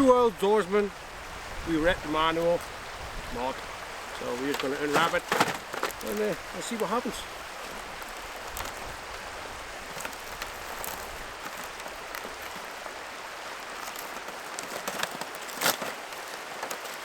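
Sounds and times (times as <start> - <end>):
river rushing: 0.0 - 17.0
plastic wrapping crinkling: 4.2 - 7.0, 13.7 - 17.0.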